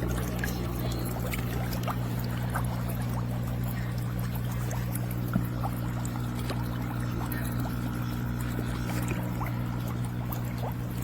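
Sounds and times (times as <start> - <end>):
low electric pump hum: 0.0 - 11.0
water bubbling: 0.0 - 11.0.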